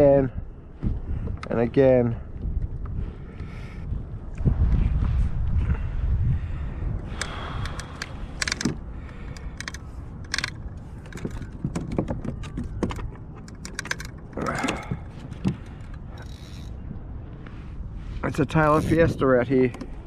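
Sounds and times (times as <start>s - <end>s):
fishing gear clicks and rattles: 7.1s - 16.8s, 18.4s - 20.0s.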